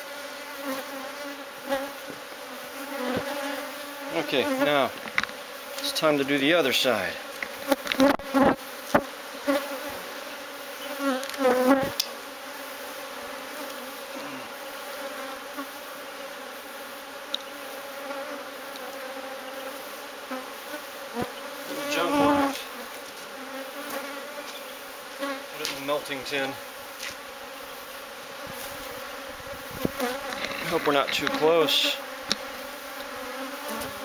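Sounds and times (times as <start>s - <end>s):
bees buzzing: 0.0s - 34.0s.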